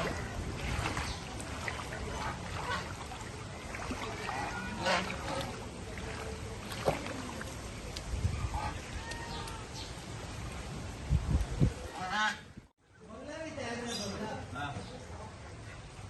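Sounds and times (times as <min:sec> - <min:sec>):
flood water splashing and sloshing: 0:00.0 - 0:12.3.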